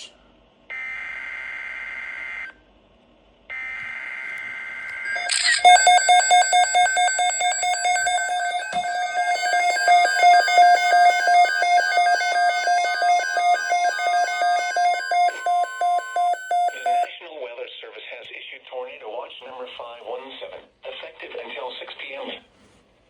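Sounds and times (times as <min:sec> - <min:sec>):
loud alert tone: 0:05.1 - 0:17.1
screeching digital data bursts: 0:05.1 - 0:17.1.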